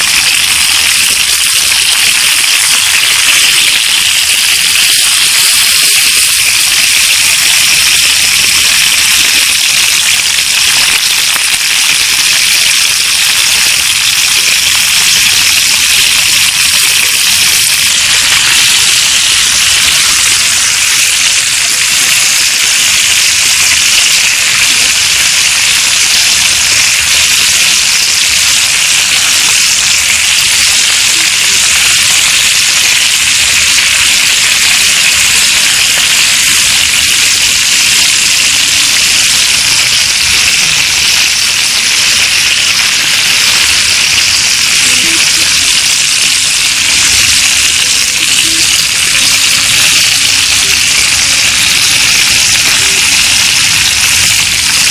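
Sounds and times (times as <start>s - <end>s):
steady loud hiss: 12.9s - 54.9s.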